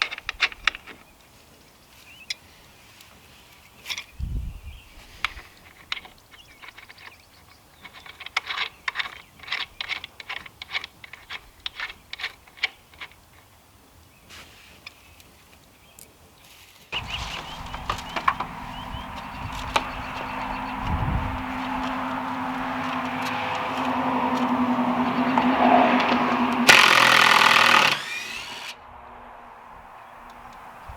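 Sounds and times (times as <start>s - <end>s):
motor running: 17.0s - 28.8s.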